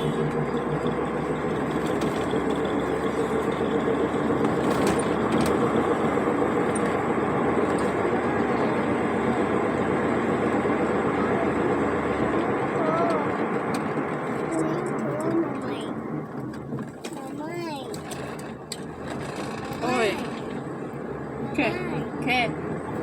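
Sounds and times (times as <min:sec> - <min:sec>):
car engine: 0:00.0 - 0:23.0
tyre noise on road: 0:00.0 - 0:23.0.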